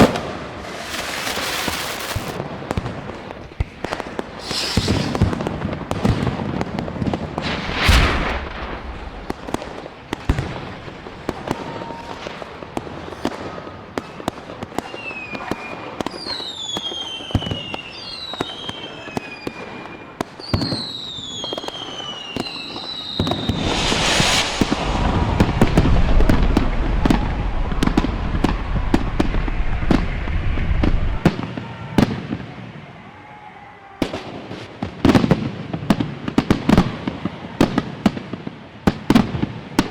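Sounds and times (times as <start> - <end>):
falling firework whistles: 0.0 - 2.4, 3.8 - 6.2, 7.3 - 12.4, 14.0 - 32.1
fireworks crackling and popping: 0.0 - 32.5
big firework bursts: 0.0 - 32.6
low rumbling: 23.4 - 31.2.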